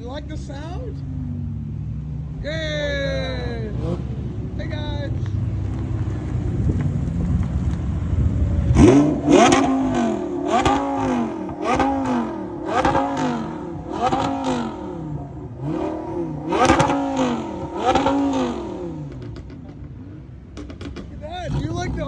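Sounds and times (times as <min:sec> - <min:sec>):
car engines revving: 0:00.0 - 0:22.0
sharp exhaust pops: 0:05.2 - 0:15.0, 0:15.6 - 0:21.8.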